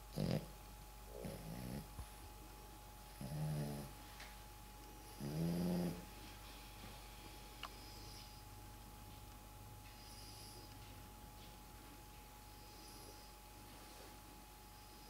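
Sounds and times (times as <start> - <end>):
dog snoring: 0.1 - 2.0, 3.1 - 4.0, 5.0 - 6.1.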